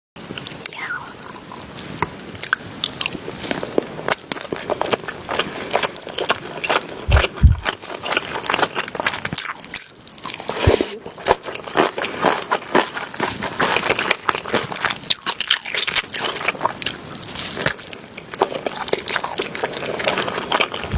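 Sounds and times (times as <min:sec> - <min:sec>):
person chewing crunchy food: 0:00.2 - 0:20.9
low thumps: 0:07.1 - 0:07.7.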